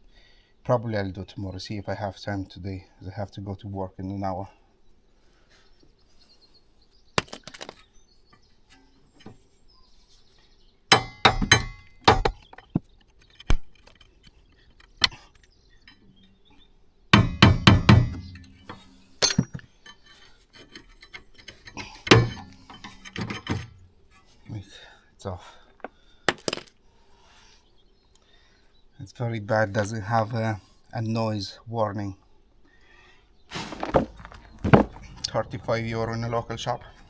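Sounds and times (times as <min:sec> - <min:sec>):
metal brake parts clinking: 0:10.9 - 0:12.4, 0:17.2 - 0:23.9, 0:33.5 - 0:37.0
sharp metal knocks: 0:10.9 - 0:12.4, 0:17.2 - 0:20.0, 0:20.6 - 0:23.8, 0:33.6 - 0:37.0.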